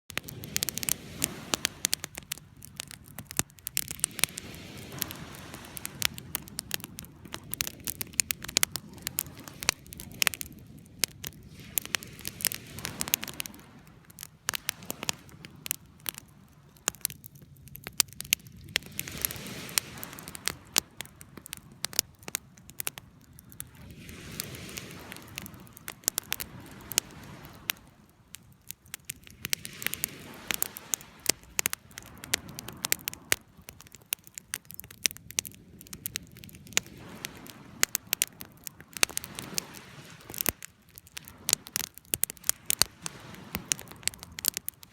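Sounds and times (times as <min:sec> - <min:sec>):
wood fire crackling: 0:00.0 - 0:44.9.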